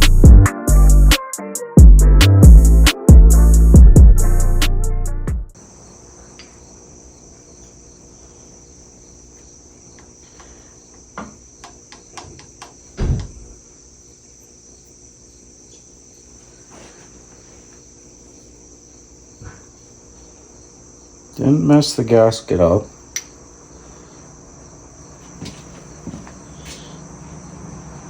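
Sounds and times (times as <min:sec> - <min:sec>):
loud thump: 0:13.0 - 0:13.6.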